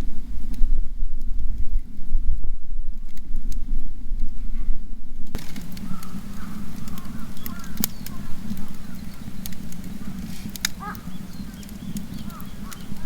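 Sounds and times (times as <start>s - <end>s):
low steady hum: 0.0s - 13.0s
wood fire crackling and popping: 0.0s - 13.0s
birds chirping: 4.9s - 13.0s.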